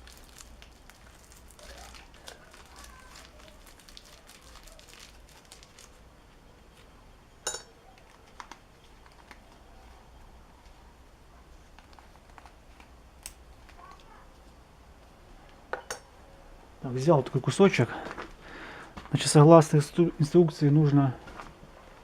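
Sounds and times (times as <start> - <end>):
light crinkling: 0.0 - 15.7.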